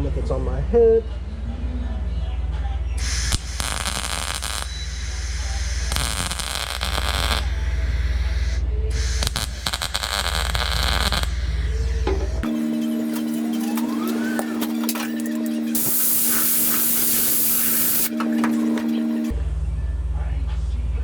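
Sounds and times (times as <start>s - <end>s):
welding arc crackling: 3.0s - 7.6s, 9.0s - 11.4s, 12.4s - 19.3s.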